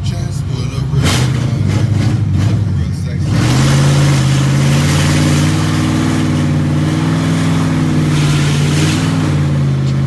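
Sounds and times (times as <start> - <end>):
car engine droning: 0.0 - 10.0
road and wind noise: 0.0 - 10.0.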